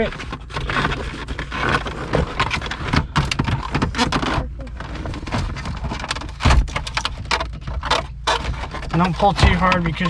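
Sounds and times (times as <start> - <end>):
plastic trim clicking and rattling: 0.2 - 10.0.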